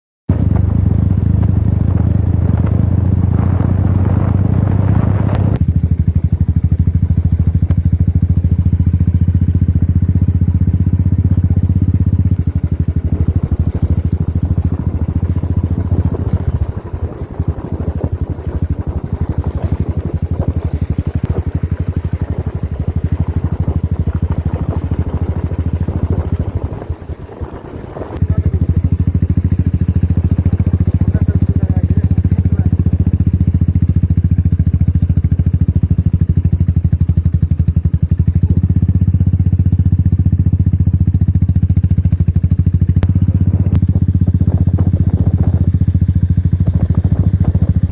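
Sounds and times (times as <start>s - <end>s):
motorcycle engine running: 0.3s - 47.9s.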